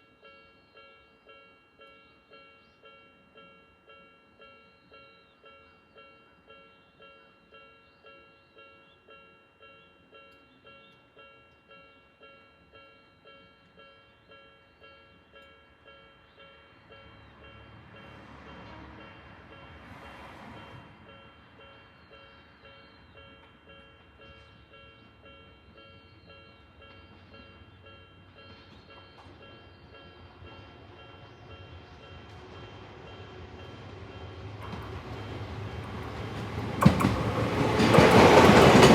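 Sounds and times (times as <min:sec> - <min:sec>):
electronic crossing warning bell: 0:00.0 - 0:35.2
train rumble: 0:16.7 - 0:38.9.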